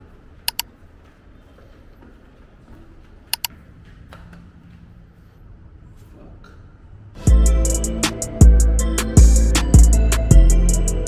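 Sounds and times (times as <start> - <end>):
sharp double clicks: 0.5 - 0.7.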